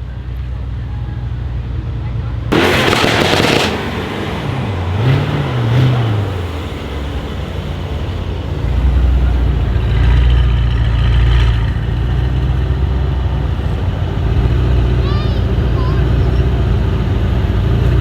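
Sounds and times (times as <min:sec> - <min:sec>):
car engine revving: 0:02.5 - 0:18.0.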